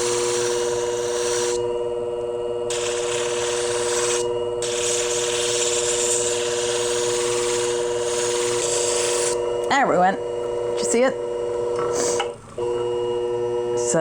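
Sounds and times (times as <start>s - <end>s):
blade grinding hiss: 0.0s - 1.6s, 2.7s - 9.4s
sharpening machine humming: 0.0s - 14.0s.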